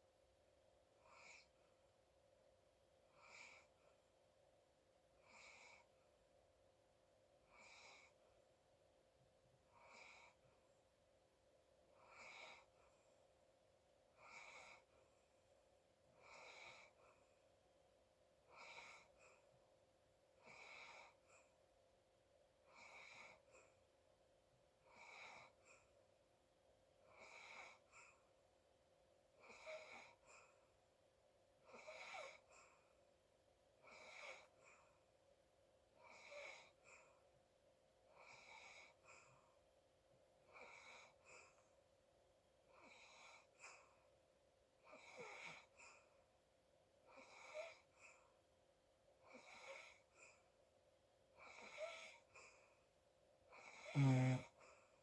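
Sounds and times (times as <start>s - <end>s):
wheezy snoring: 1.0s - 1.5s, 3.2s - 3.7s, 5.2s - 5.9s, 7.5s - 8.2s, 9.8s - 10.4s, 12.0s - 12.7s, 14.2s - 14.9s, 16.2s - 17.0s, 18.5s - 19.2s, 20.4s - 21.2s, 22.7s - 23.5s, 24.9s - 25.6s, 27.1s - 28.1s, 29.4s - 30.5s, 31.7s - 32.5s, 33.8s - 34.7s, 36.0s - 36.8s, 38.2s - 39.0s, 40.5s - 41.5s, 42.7s - 43.8s, 44.8s - 45.8s, 47.1s - 48.2s, 49.3s - 50.2s, 51.4s - 52.4s, 53.5s - 54.8s.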